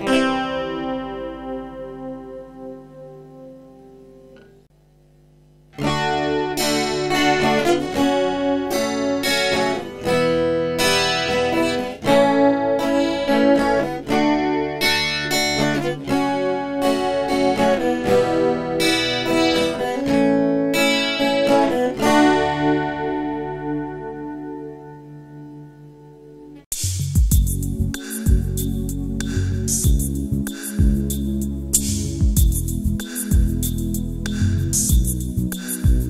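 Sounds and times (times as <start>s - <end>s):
guitar chords with effect: 0.0s - 4.7s, 5.7s - 26.6s.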